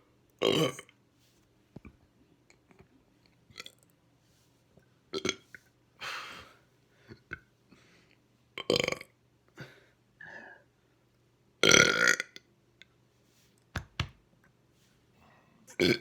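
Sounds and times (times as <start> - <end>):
person burping: 0.4 - 0.9, 11.6 - 12.4, 15.8 - 16.0.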